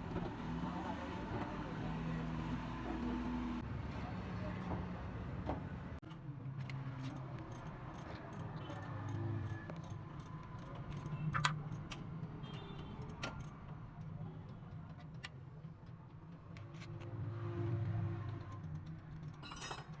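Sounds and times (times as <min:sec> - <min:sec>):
light metallic clicks and clinks: 0:18.4 - 0:20.0.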